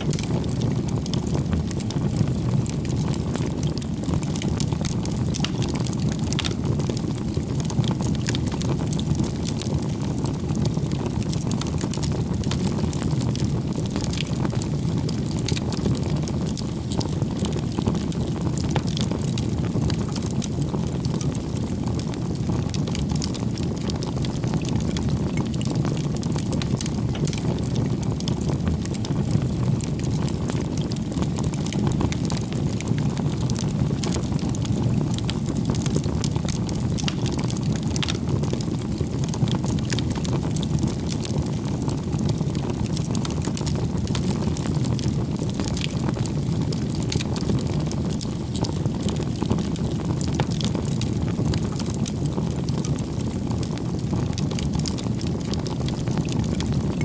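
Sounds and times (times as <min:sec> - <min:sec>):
campfire flames rushing: 0:00.0 - 0:57.0
fire crackling and popping: 0:00.0 - 0:57.0.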